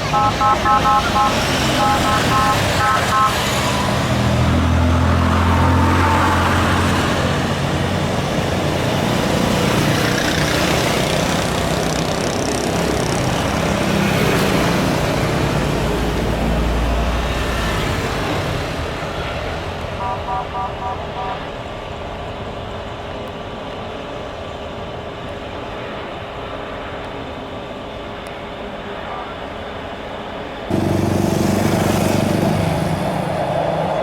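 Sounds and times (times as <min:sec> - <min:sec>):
jet engines roaring: 0:00.0 - 0:34.0.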